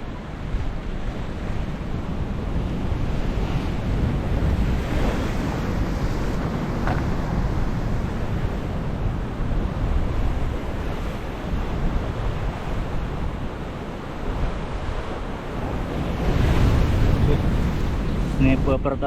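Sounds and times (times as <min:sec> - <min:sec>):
surf washing on rocks: 0:00.0 - 0:19.0
wind buffeting microphone: 0:00.0 - 0:19.0.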